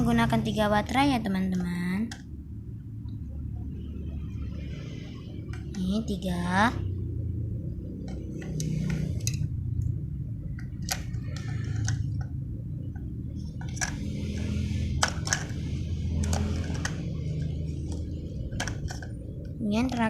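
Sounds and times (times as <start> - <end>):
low handling rumble: 0.0 - 20.0
batteries and plastic clicking: 8.0 - 9.9, 10.6 - 12.3, 13.0 - 20.0.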